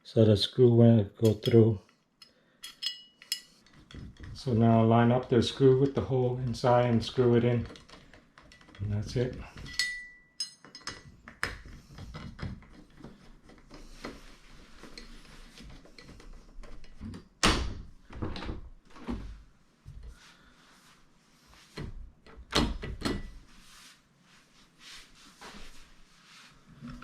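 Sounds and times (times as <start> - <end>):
metal lock parts knocking: 2.7 - 4.7, 5.8 - 13.8.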